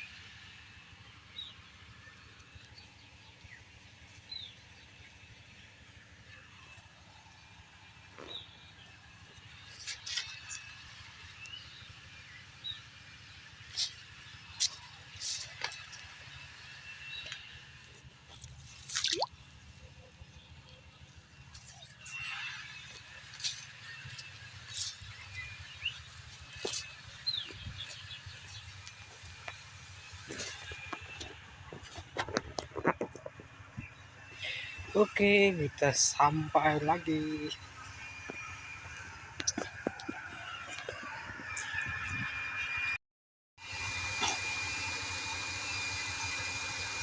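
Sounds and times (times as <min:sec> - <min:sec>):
birds chirping: 0:20.0 - 0:42.4
bird chirps: 0:21.8 - 0:29.3.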